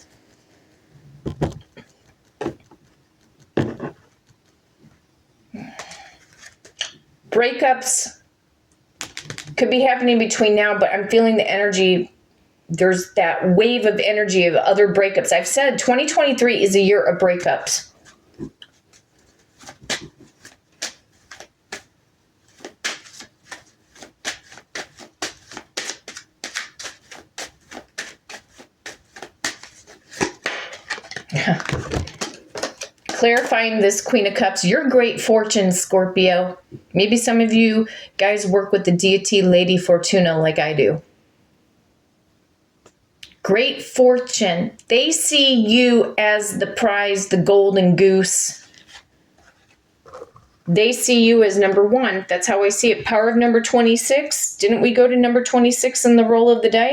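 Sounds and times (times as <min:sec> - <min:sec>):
cards rustling: 0:06.2 - 0:07.0, 0:09.0 - 0:09.6, 0:17.9 - 0:33.8, 0:48.6 - 0:50.4
cards tapping on table: 0:22.6 - 0:31.2.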